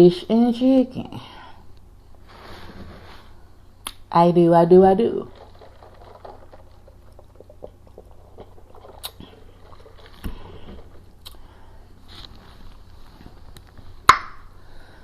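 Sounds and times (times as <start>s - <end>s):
chewing fried food: 5.2s - 11.5s.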